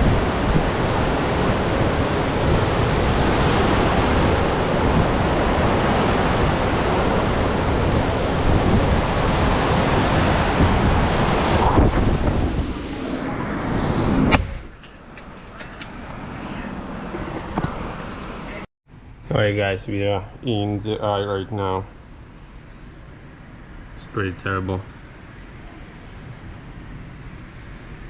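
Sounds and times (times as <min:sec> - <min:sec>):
wind buffeting microphone: 0:00.0 - 0:18.6.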